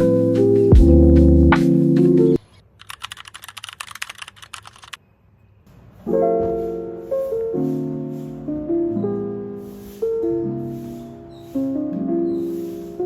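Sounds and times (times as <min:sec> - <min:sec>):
background music: 0:00.0 - 0:02.4
quick keyboard typing: 0:02.7 - 0:05.0.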